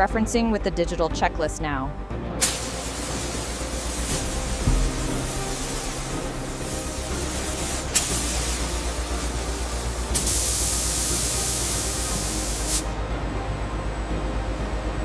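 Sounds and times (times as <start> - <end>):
steady low hum: 2.0 - 15.0
hissing spray: 2.4 - 12.9.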